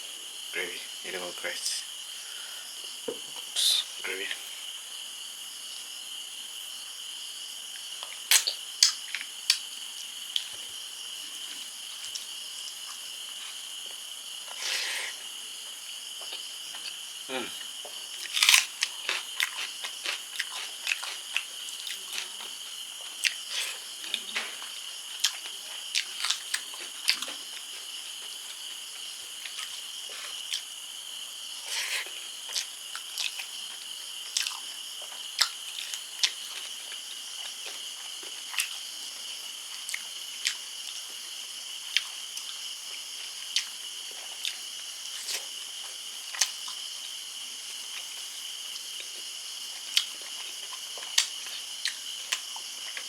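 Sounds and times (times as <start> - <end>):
insects chirring: 0.0 - 53.0
lip smacks and mouth clicks: 8.0 - 9.6
wet chewing: 18.2 - 22.5.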